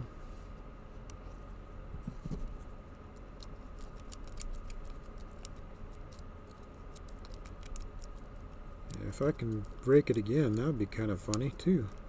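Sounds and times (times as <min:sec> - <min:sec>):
faint steady hum: 0:00.0 - 0:12.0
lock picks clicking in padlock: 0:03.4 - 0:12.0.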